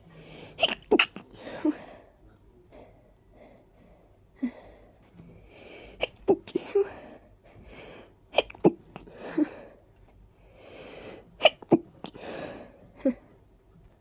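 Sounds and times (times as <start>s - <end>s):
person sneezing: 0.6s - 1.7s, 6.0s - 6.9s, 8.4s - 9.5s, 11.4s - 12.2s
breathy inhales: 10.4s - 11.3s.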